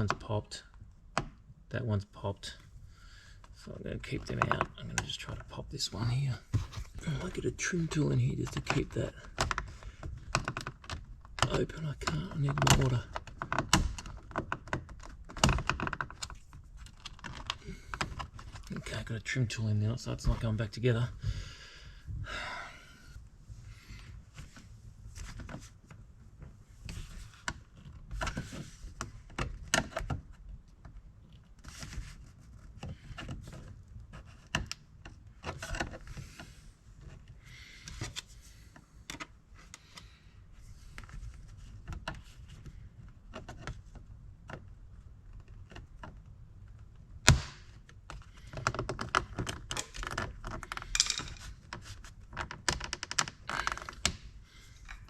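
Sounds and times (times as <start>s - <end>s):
plastic clicks and scrapes: 26.8s - 40.1s
sharp plastic snap: 47.2s - 47.8s.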